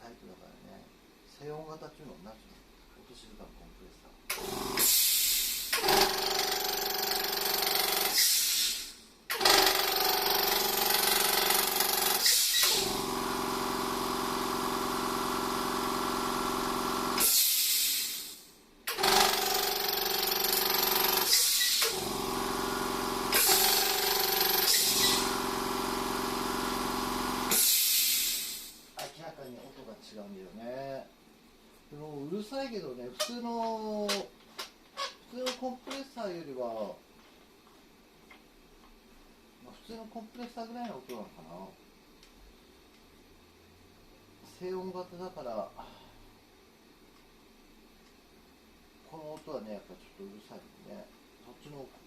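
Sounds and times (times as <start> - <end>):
air compressor humming: 4.3 - 29.1
loud hissing air: 4.8 - 5.8, 8.2 - 9.1, 17.2 - 18.6, 21.3 - 22.1, 27.5 - 29.0.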